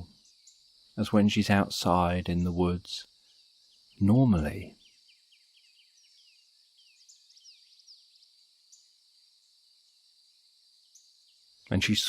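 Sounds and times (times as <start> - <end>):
birds chirping: 0.0 - 12.0
insect drone: 0.0 - 12.0.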